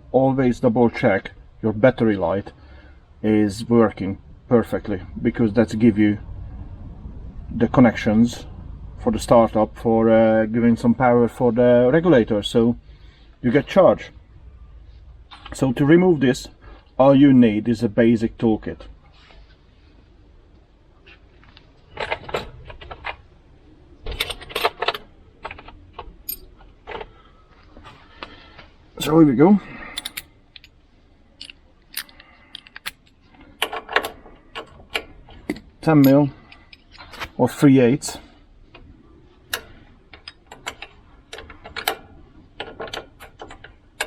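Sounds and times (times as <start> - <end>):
metal hand tools clinking: 29.0 - 30.7
spanner clicking on bolt: 30.0 - 30.7, 33.6 - 38.2, 39.5 - 42.0, 42.6 - 44.0.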